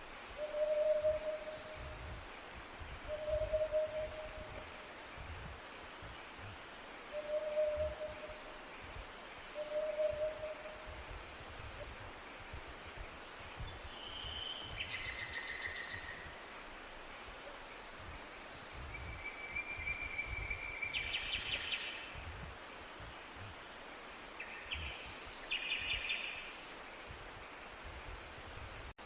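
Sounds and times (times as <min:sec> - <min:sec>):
songbird singing trills: 0:02.9 - 0:04.7, 0:07.1 - 0:08.9, 0:09.5 - 0:10.9, 0:13.6 - 0:16.4, 0:18.6 - 0:22.2, 0:23.8 - 0:26.5.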